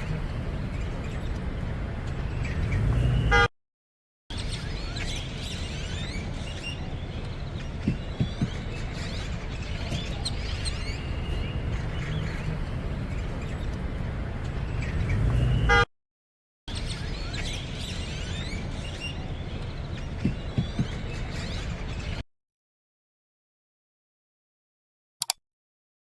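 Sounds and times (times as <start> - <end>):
birds chirping and calling: 4.3 - 15.6, 16.7 - 22.2.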